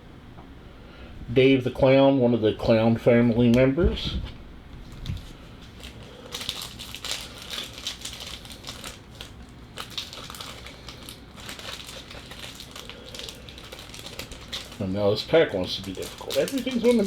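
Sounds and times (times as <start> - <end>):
wrapper crinkling: 4.8 - 17.0.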